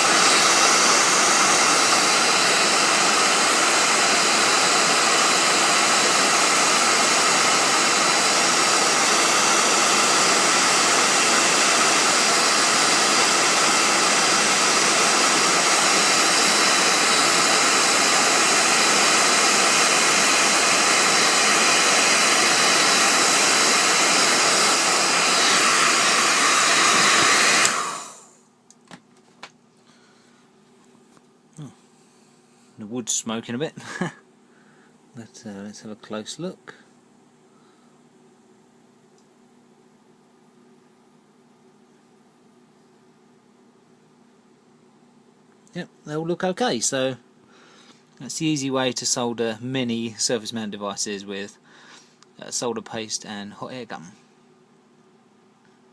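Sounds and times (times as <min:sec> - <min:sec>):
hot air gun blowing: 0:00.0 - 0:28.4.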